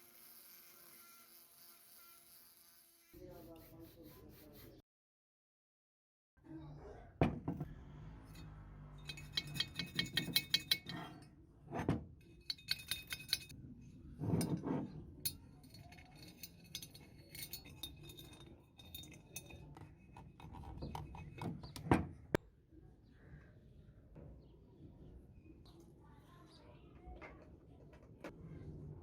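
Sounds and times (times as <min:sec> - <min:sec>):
small metal parts clinking: 0:09.0 - 0:11.1, 0:12.4 - 0:13.5, 0:15.3 - 0:21.7
dull knocks and scrapes: 0:14.2 - 0:15.1.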